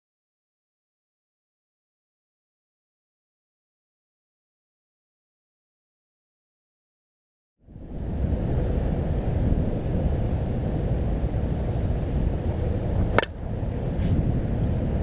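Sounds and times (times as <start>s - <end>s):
low outdoor rumble: 7.6s - 15.0s
sharp crack: 13.0s - 13.4s.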